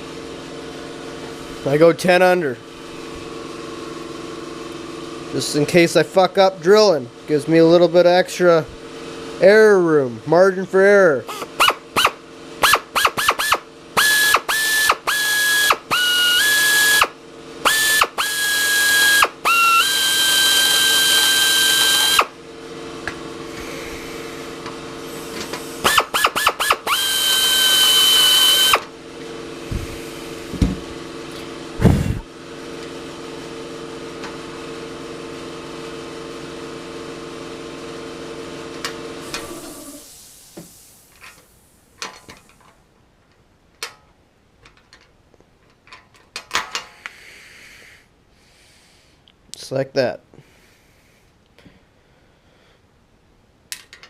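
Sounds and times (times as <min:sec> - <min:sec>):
steady low hum: 0:00.0 - 0:42.2
power drill whining: 0:11.3 - 0:22.4, 0:25.2 - 0:28.9.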